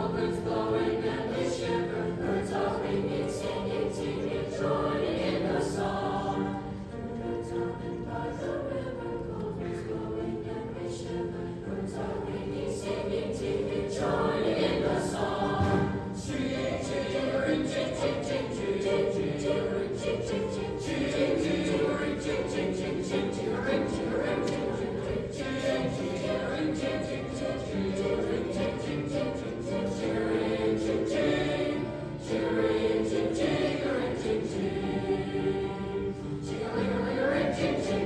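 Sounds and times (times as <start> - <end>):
children's choir singing: 0.0 - 38.0.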